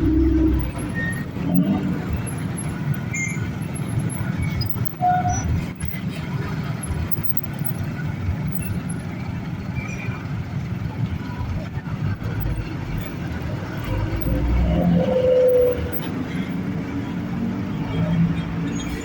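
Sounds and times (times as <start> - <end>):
heavy vehicle engine running: 0.0 - 19.0.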